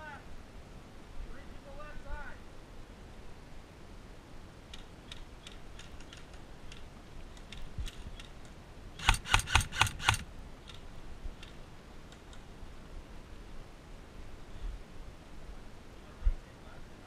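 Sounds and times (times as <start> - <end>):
airsoft gun shots: 9.0 - 10.3.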